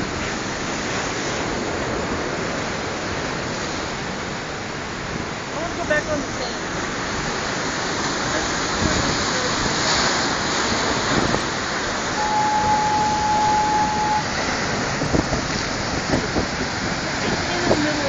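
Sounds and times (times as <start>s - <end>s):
storm surf breaking: 0.0s - 18.0s
thin steady tone: 12.2s - 14.4s.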